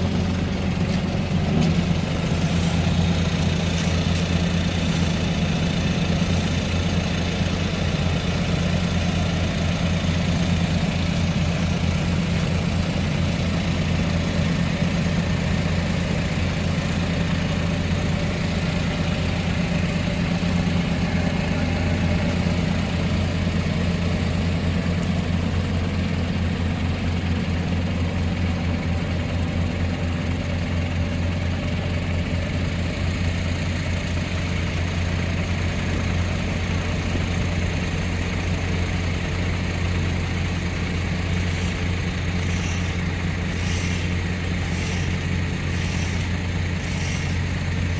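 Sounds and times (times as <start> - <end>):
boat engine running: 40.4 - 47.9.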